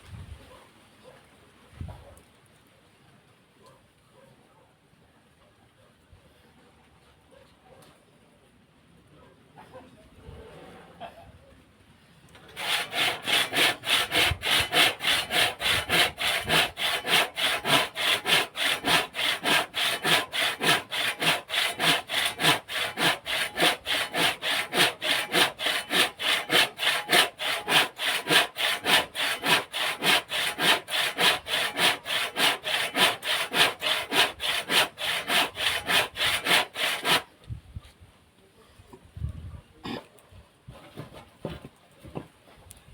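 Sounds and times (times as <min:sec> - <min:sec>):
hand saw cutting wood: 0:12.5 - 0:37.3.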